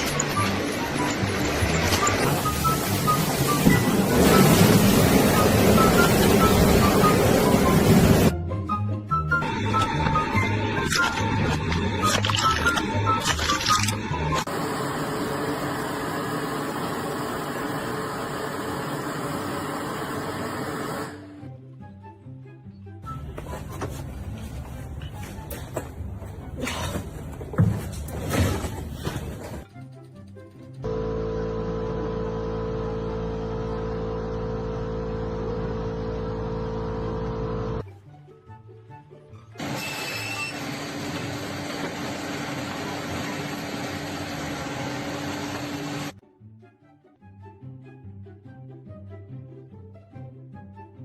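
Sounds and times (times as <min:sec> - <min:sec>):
machine running: 0:09.4 - 0:21.3, 0:39.6 - 0:46.2.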